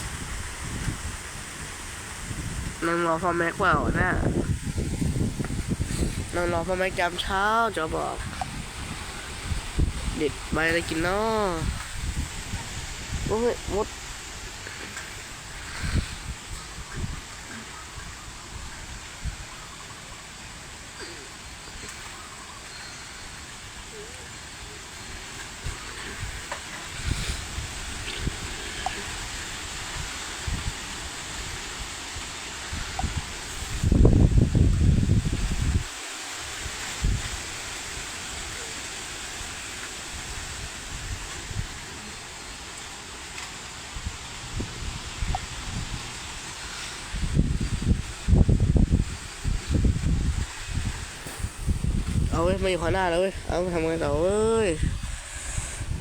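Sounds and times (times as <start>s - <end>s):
strong wind buffeting microphone: 0.0s - 19.7s, 24.6s - 42.5s, 43.6s - 56.0s.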